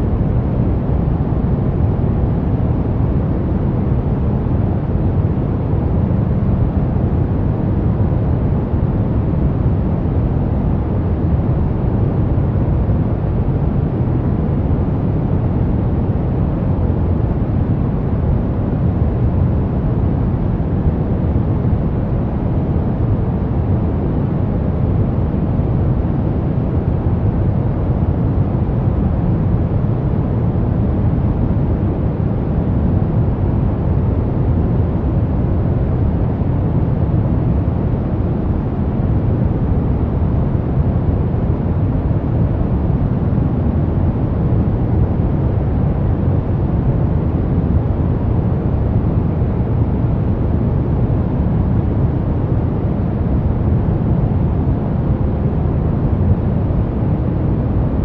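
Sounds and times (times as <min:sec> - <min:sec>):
brown noise rumbling hiss: 0:00.0 - 0:58.0.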